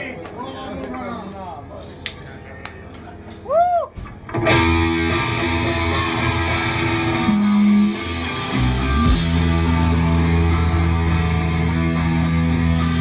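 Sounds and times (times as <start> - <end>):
live rock band: 4.1 - 13.0
electric guitar chords: 4.3 - 13.0.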